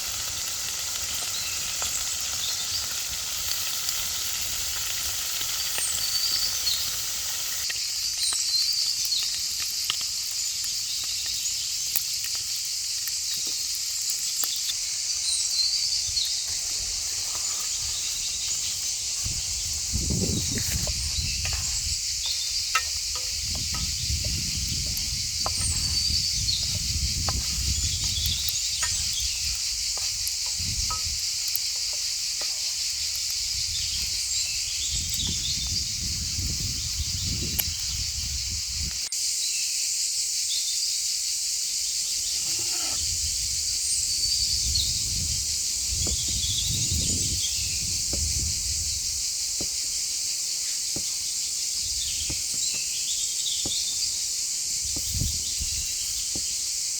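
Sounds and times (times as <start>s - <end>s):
insects chorus: 0.0s - 56.9s
bird chirps: 21.0s - 24.6s.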